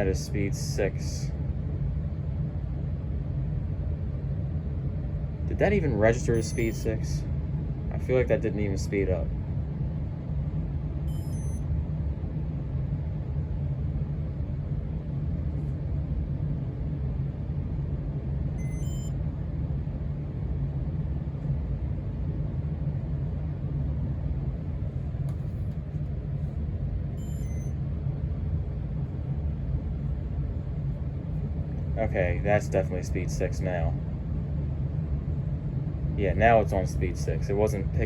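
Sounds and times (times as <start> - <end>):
ceiling fan humming: 0.0 - 38.0
faint electronic chirps: 6.4 - 7.2, 11.1 - 11.6, 18.6 - 19.2, 27.2 - 27.8.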